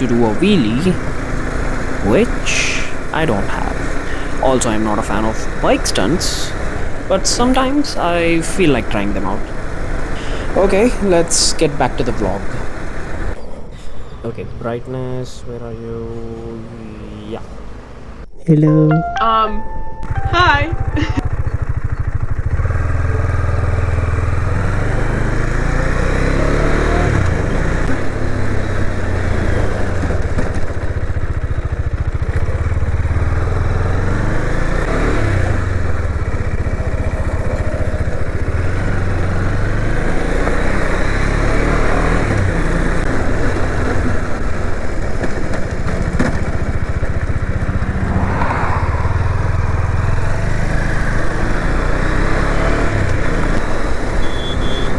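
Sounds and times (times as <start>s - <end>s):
motorcycle engine running: 0.0s - 13.4s, 20.0s - 54.9s.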